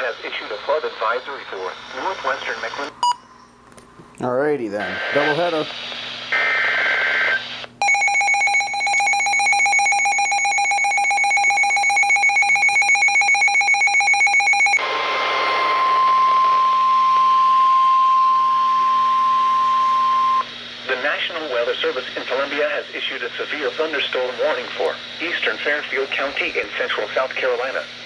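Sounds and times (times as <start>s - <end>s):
radio hiss: 0.0s - 3.0s, 4.8s - 7.7s, 20.4s - 28.0s
steady warning tone: 4.8s - 5.6s, 7.8s - 28.0s
pulsing electronic alarm buzz: 7.8s - 14.8s.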